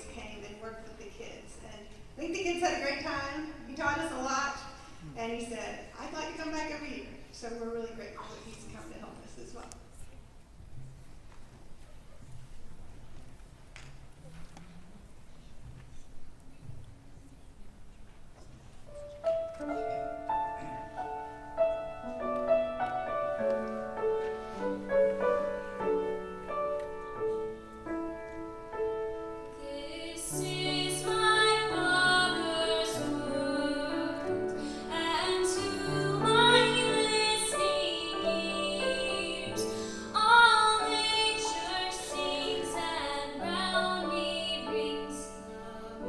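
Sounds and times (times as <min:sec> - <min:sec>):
piano: 0:16.2 - 0:46.0
children's choir singing: 0:29.5 - 0:46.0.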